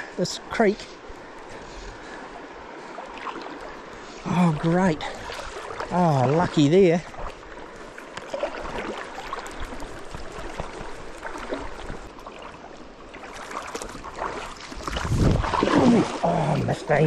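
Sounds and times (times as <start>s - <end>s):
stream water running: 0.0s - 17.0s
fish splashing: 5.0s - 17.0s.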